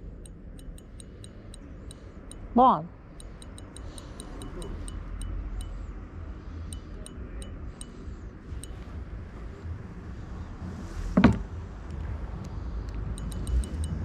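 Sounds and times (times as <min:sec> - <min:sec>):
sharp ringing ticks: 0:00.0 - 0:05.9, 0:06.7 - 0:08.9, 0:13.0 - 0:14.0.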